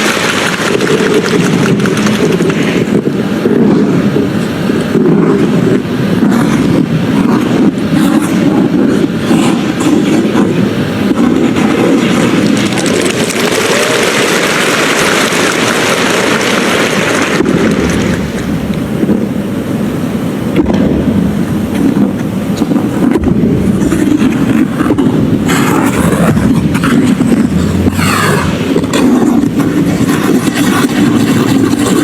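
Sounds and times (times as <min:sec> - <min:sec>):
skate blades gliding on ice: 0:00.0 - 0:19.3, 0:21.7 - 0:32.0
skate blades scraping ice: 0:21.8 - 0:32.0.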